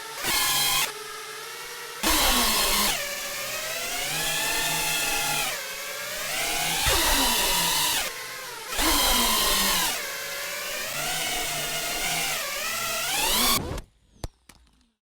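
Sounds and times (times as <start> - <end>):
drone motors whining: 2.0 - 14.0.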